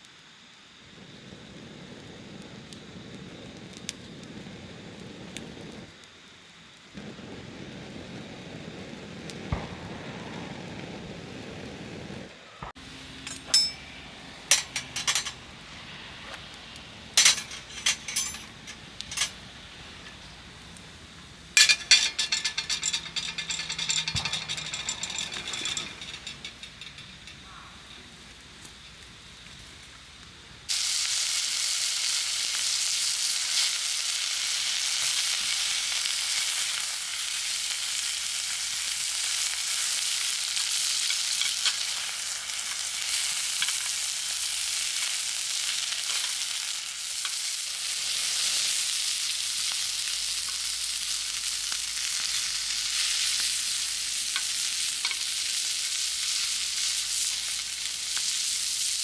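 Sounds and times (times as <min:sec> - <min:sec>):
food sizzling in a pan: 0:30.7 - 0:59.0.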